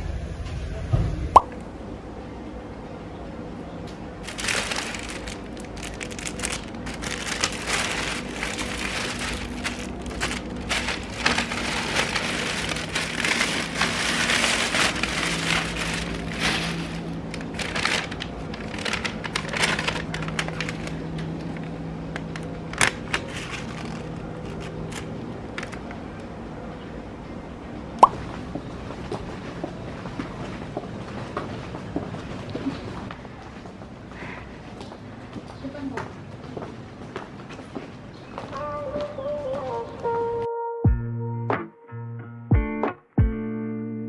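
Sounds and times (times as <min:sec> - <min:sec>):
rustling and crinkling: 0:03.9 - 0:26.3.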